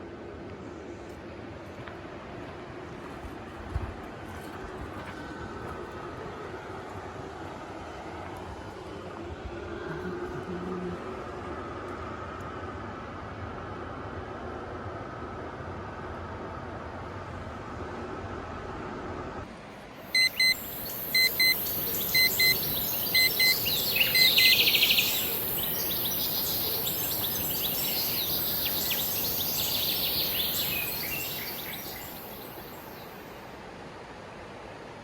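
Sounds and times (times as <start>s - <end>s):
electronic double beeps: 20.2s - 25.8s
birds chirping and trilling: 20.2s - 33.1s.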